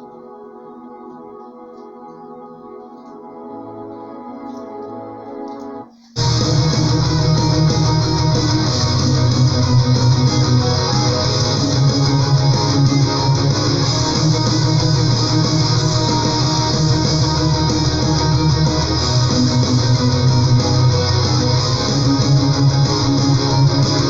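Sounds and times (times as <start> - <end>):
metal song with electric guitars: 6.2 - 24.0.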